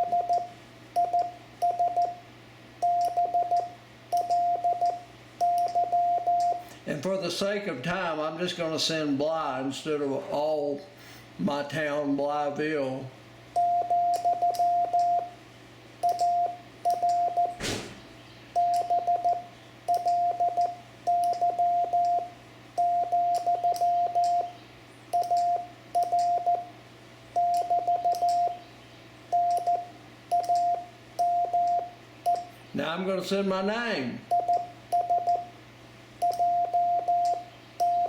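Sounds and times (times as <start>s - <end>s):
morse code tone: 0.0s - 2.2s, 2.8s - 6.6s, 13.6s - 15.4s, 16.0s - 17.6s, 18.6s - 24.6s, 25.2s - 26.7s, 27.4s - 28.6s, 29.3s - 32.5s, 34.3s - 35.5s, 36.2s - 38.0s.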